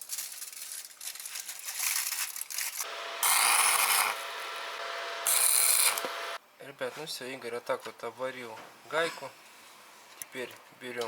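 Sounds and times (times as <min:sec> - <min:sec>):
aluminium foil crinkling: 0:00.0 - 0:02.8
electric arc welding: 0:02.8 - 0:06.4
steady hum: 0:02.8 - 0:06.4.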